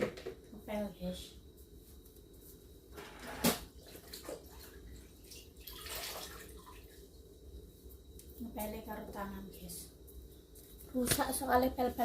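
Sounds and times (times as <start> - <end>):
water splashing and dripping: 3.8 - 7.0.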